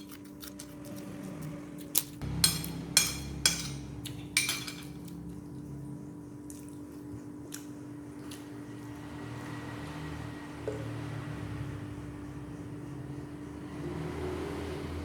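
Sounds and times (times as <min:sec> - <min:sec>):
steady low hum: 0:00.0 - 0:15.0
dishes and utensils clinking: 0:02.3 - 0:05.1.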